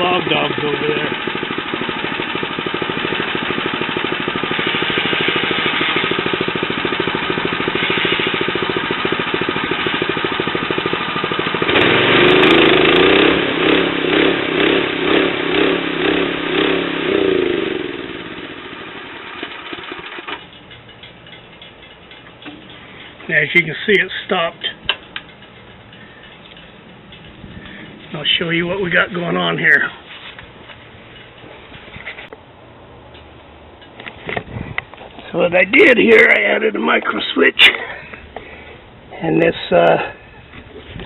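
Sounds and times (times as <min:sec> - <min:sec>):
saw blade cutting log: 0:00.0 - 0:13.3
sawmill gas engine running: 0:00.0 - 0:21.2.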